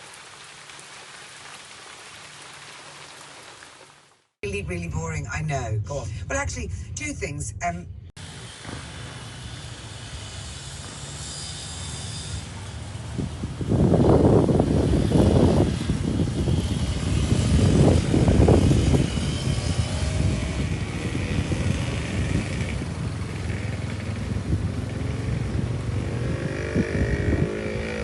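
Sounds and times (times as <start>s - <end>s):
motorcycle engines revving: 8.4s - 28.0s.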